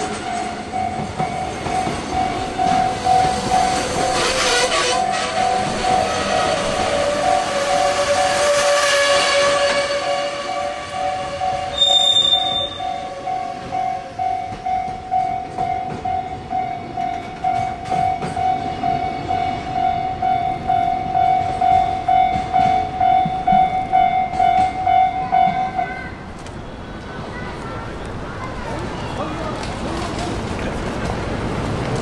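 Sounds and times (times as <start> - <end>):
train wheels clicking over rail joints: 0.0 - 7.9, 11.4 - 19.3, 21.1 - 26.6, 29.6 - 32.0
train horn: 4.0 - 13.2
level crossing bell ringing: 10.1 - 25.8.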